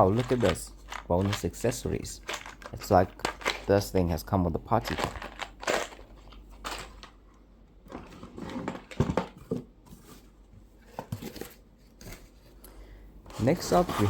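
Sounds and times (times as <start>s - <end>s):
plastic packaging rustling: 0.0s - 3.9s, 4.8s - 7.2s, 13.3s - 14.0s.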